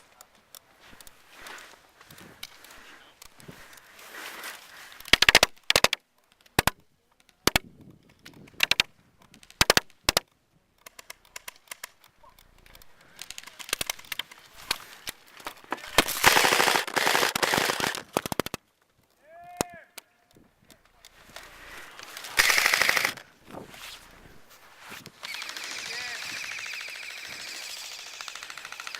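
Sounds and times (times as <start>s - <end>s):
airsoft guns firing: 15.6s - 18.6s, 21.4s - 23.3s, 25.2s - 28.9s.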